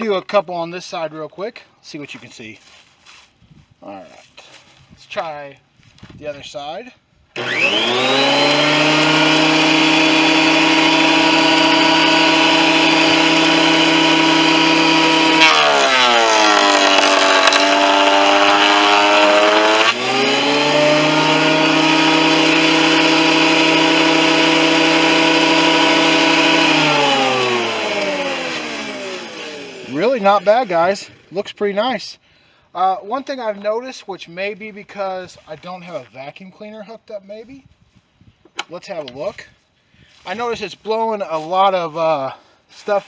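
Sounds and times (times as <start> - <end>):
thickness planer whining: 7.4 - 31.4.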